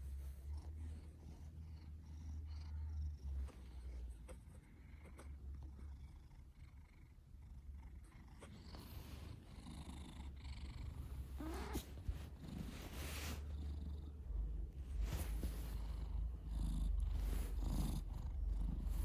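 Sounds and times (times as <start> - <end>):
cat snoring: 4.7 - 19.0.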